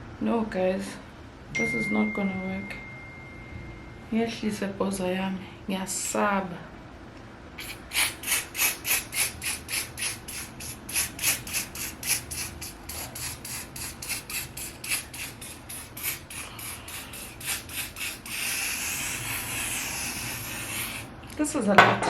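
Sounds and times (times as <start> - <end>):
spray can hissing: 7.6 - 21.1.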